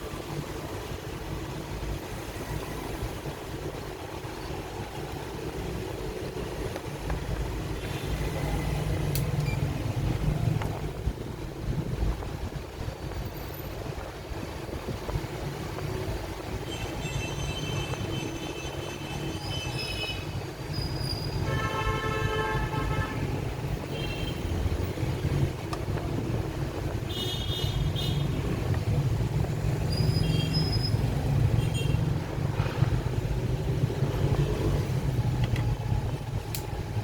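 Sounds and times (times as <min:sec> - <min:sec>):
road traffic rumble: 0:00.0 - 0:37.0
vehicle horn tooting: 0:21.4 - 0:23.3.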